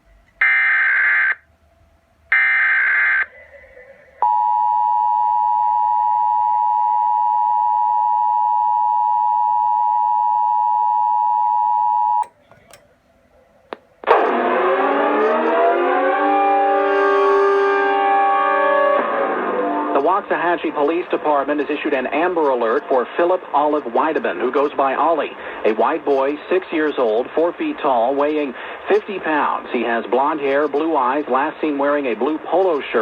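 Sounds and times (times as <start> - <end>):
siren winding up: 14.0 - 20.0.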